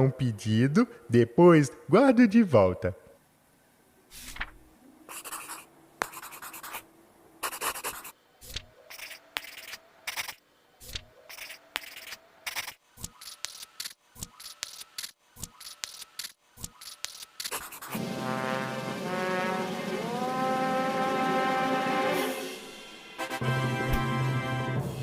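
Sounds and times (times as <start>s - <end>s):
pencil scratching on paper: 5.1s - 6.8s, 7.4s - 18.0s.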